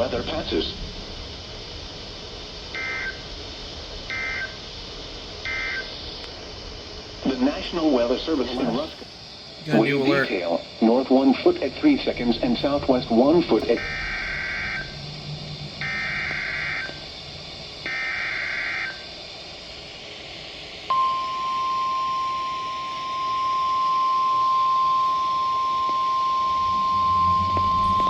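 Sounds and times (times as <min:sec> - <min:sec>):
steady warning alarm tone: 0:11.8 - 0:19.2, 0:20.9 - 0:28.0
screechy data tones: 0:12.4 - 0:19.0.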